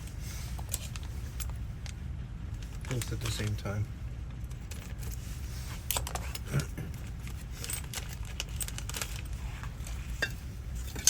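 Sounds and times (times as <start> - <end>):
lock parts clicking and rattling: 0.0 - 3.6, 4.3 - 11.0
low hum: 0.0 - 11.0.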